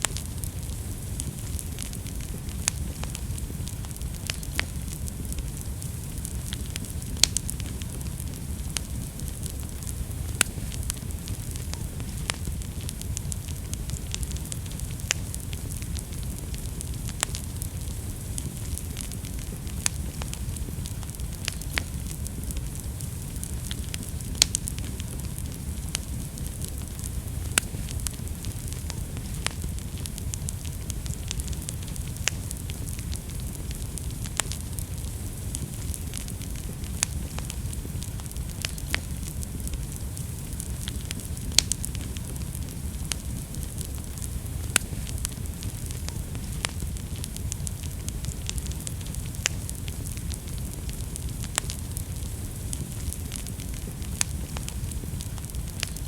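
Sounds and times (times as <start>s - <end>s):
fire crackling and popping: 0.0s - 56.0s
wood fire burning: 0.0s - 56.0s.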